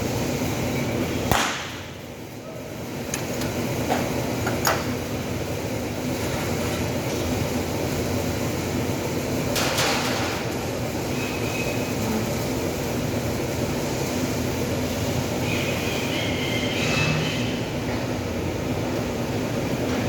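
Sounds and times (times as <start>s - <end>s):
steady machine hum: 0.0s - 20.0s
workshop noise: 0.0s - 20.0s
stud welding crack: 1.2s - 2.0s.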